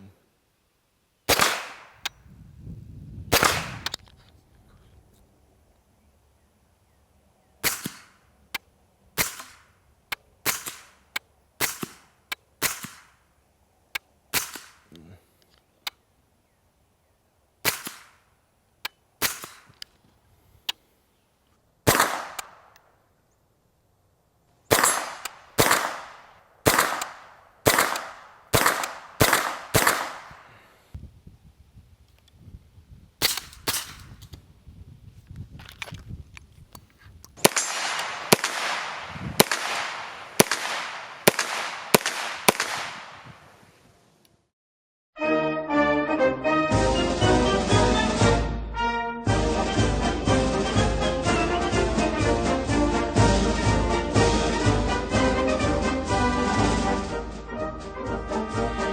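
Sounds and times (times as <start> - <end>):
gunshots with echo: 1.3 - 2.1, 3.3 - 3.9, 7.6 - 8.2, 17.6 - 18.2, 21.9 - 22.7, 24.7 - 30.5, 37.4 - 43.3.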